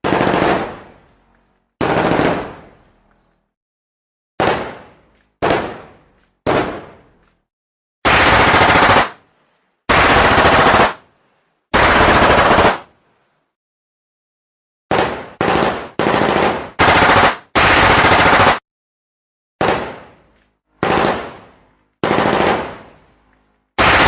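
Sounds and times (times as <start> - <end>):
automatic gunfire bursts: 0.0 - 0.8, 1.8 - 2.6, 8.0 - 9.2, 9.9 - 11.0, 11.8 - 12.9, 14.9 - 18.6, 20.8 - 21.4, 22.0 - 22.8, 23.8 - 24.0.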